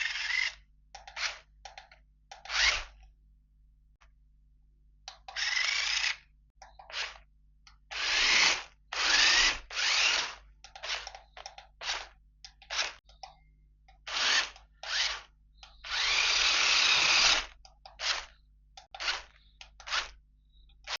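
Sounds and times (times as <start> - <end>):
toy car motor whirring: 0.0 - 1.5, 5.3 - 6.2, 7.9 - 11.2, 14.0 - 20.2.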